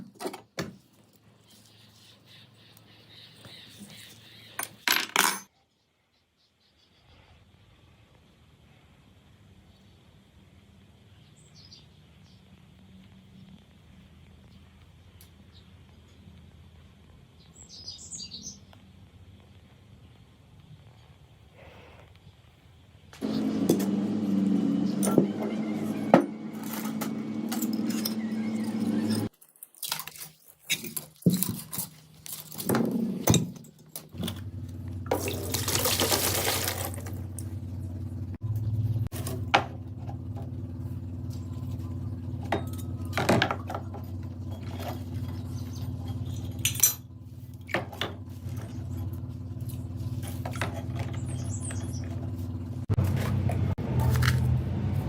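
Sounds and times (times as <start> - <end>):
machine hum: 23.2 - 29.3
metal clinks and knocks: 42.4 - 47.1.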